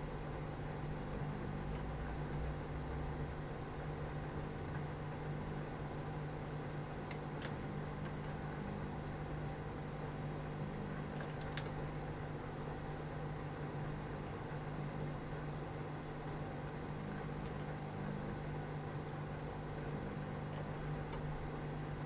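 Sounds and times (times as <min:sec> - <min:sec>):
microwave oven humming: 0:00.0 - 0:22.0
faint light clicks: 0:11.2 - 0:12.0.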